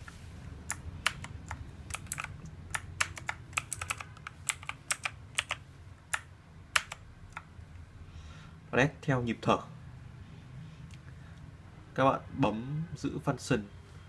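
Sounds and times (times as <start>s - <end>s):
mechanical keyboard key clicks: 0.7s - 7.5s.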